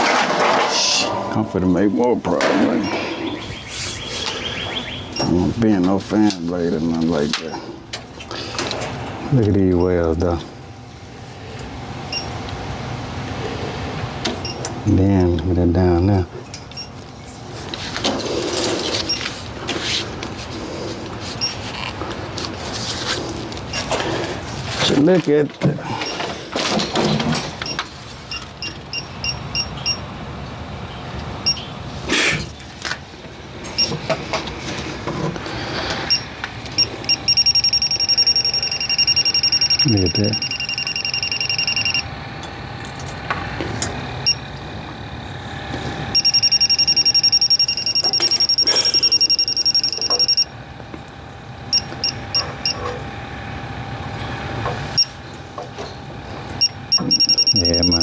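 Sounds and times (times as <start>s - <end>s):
steady low hum: 0.0s - 58.0s
leak detector high beeps: 4.3s - 5.4s, 27.6s - 30.0s, 36.1s - 42.1s, 44.2s - 44.4s, 46.1s - 50.5s, 51.7s - 52.8s, 56.6s - 58.0s.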